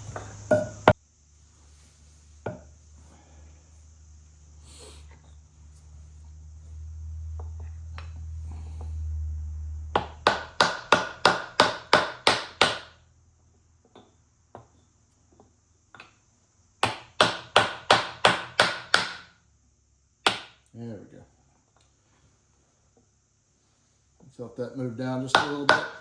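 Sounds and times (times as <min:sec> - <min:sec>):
low steady hum: 0:00.0 - 0:12.2.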